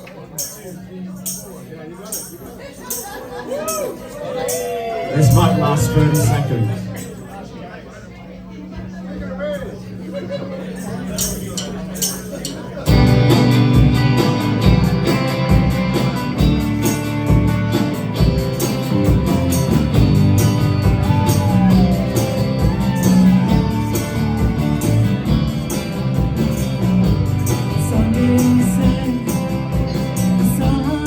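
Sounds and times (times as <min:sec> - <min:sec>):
strummed guitars: 0:00.0 - 0:07.4, 0:10.2 - 0:31.0
steady drum beat: 0:04.5 - 0:07.0, 0:11.0 - 0:31.0
person singing: 0:27.7 - 0:31.0.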